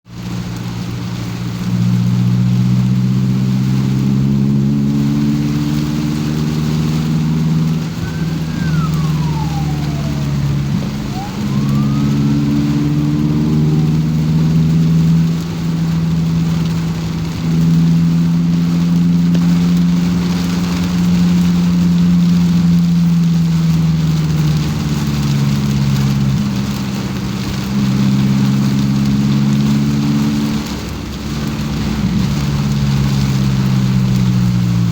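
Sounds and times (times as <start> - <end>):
car engine running: 0.1 - 34.9
rain and tyre spray hiss: 0.1 - 34.9
faint falling and rising tone: 5.9 - 15.1.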